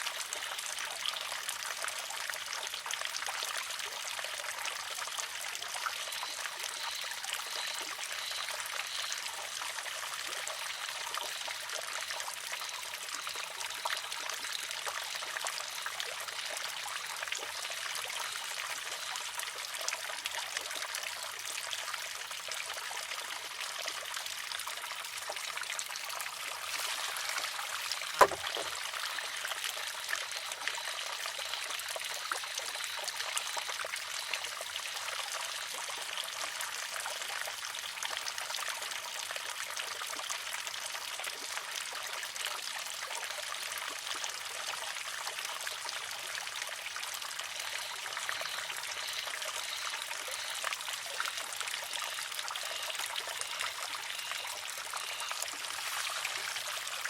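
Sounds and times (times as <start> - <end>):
water trickling from spout: 0.0 - 57.0
wooden arm clacking on rock: 28.1 - 28.8.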